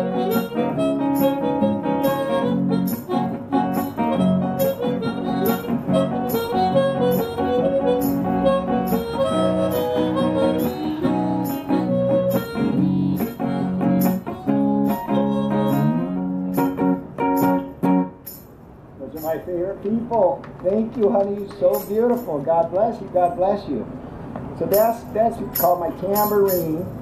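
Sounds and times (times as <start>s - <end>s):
harmonica solo: 0.0s - 16.6s
strummed acoustic guitar: 0.0s - 18.3s.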